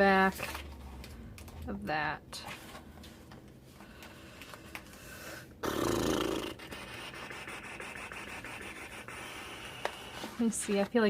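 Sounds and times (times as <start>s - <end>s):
cardstock sheets rubbing and sliding: 6.6s - 11.0s
faint paper rustling: 9.8s - 11.0s.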